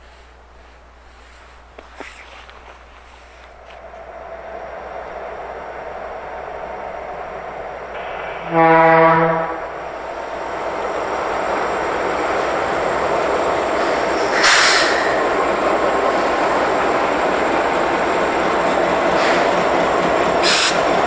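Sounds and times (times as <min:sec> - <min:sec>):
train passing by rumbling: 0:03.2 - 0:21.0
sharp noise burst: 0:07.9 - 0:15.4
locomotive horn blast: 0:08.0 - 0:09.9.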